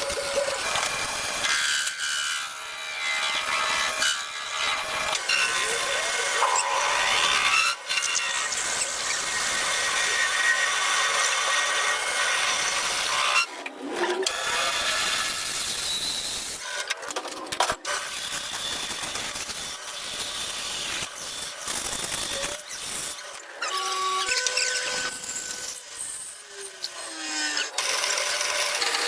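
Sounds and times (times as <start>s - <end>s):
power tool grinding metal: 0.0s - 16.7s, 17.9s - 29.0s.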